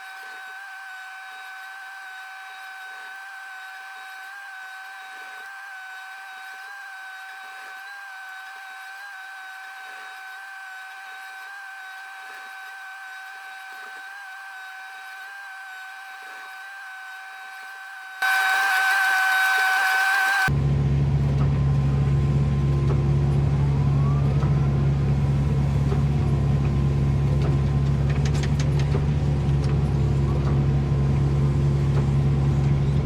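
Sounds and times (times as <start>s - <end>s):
excavator high whine: 18.2s - 28.2s.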